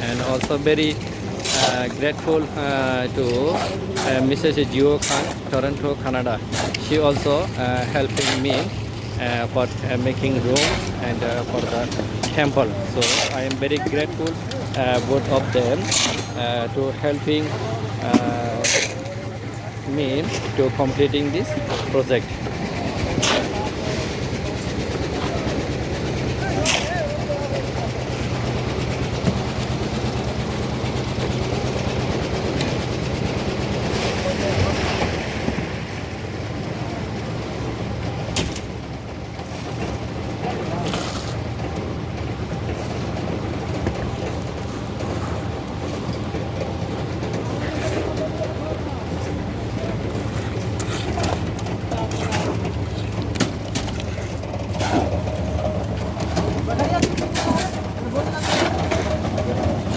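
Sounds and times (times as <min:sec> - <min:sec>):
steady low machine hum: 0:00.0 - 0:34.6
low mechanical rumble: 0:00.0 - 0:59.9.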